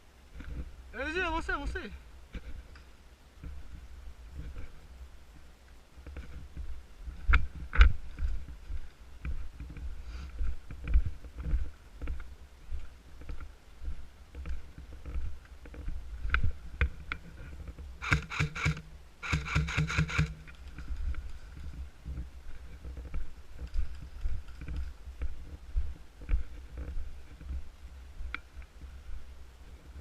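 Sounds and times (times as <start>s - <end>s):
airsoft gun firing clicks: 18.0s - 20.4s.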